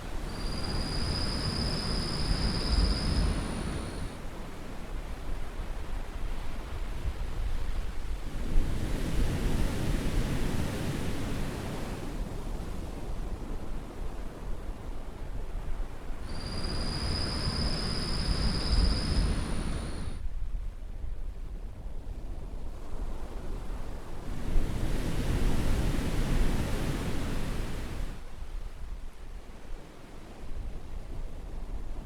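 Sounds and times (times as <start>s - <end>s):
surf washing ashore: 0.0s - 6.0s, 16.2s - 20.2s, 23.9s - 28.2s.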